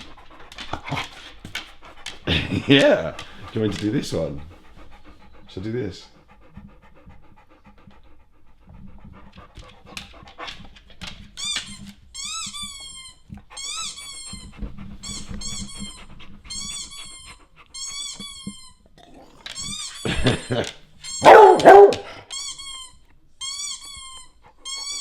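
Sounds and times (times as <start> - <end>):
dog panting: 0.0 - 11.7, 13.3 - 18.8, 19.4 - 22.3
high-pitched toy squeaks: 11.4 - 18.8, 22.3 - 25.0.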